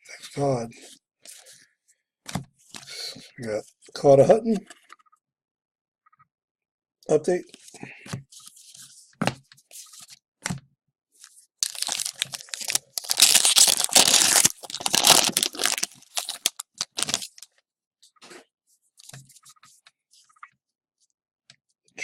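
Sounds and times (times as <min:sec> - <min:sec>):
card wrapper tearing and crinkling: 0:11.6 - 0:17.4.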